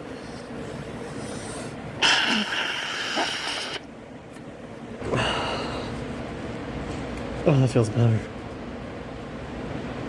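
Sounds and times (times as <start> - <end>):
man blowing his nose: 2.0 - 3.8.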